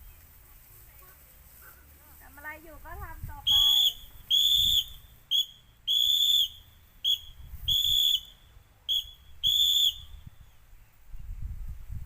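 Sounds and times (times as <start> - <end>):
whistle blasts: 3.4 - 10.3.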